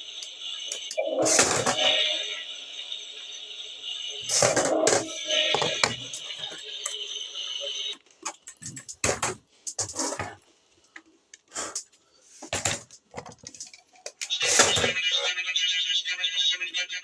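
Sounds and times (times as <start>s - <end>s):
steady tones: 0.0s - 8.0s.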